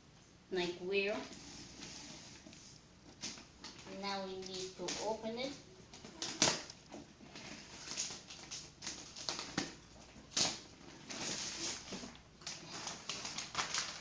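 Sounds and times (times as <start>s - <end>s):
packaging rustling: 5.9s - 14.0s.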